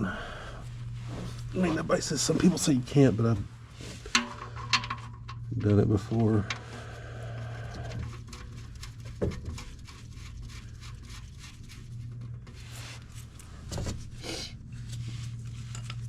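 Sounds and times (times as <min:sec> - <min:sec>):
steady low hum: 0:00.0 - 0:16.0
light metal clicks and scrapes: 0:03.8 - 0:10.0, 0:14.7 - 0:16.0.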